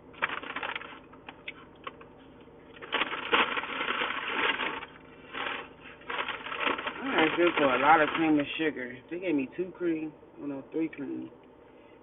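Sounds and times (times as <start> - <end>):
packets crinkling: 0.1 - 2.0, 2.8 - 8.6.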